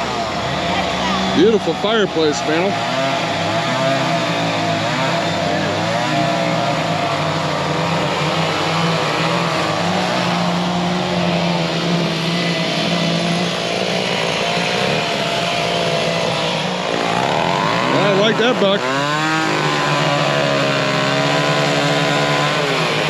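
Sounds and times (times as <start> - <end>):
small petrol engines revving: 0.0 - 23.0.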